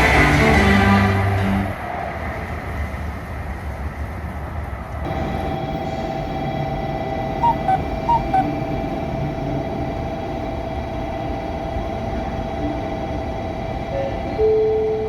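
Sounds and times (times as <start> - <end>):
low held tone: 5.1 - 9.4
steady two-tone hum: 5.1 - 15.0
two-note electronic chime: 7.4 - 8.5.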